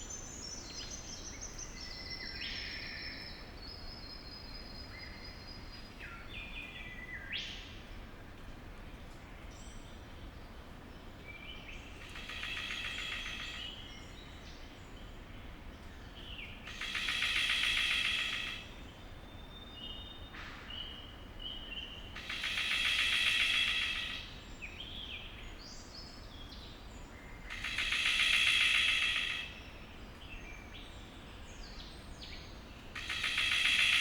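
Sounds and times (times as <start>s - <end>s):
bird's pulsing rattling call: 12.0s - 13.8s, 16.7s - 18.7s, 22.2s - 24.4s, 27.5s - 29.7s, 33.0s - 34.0s.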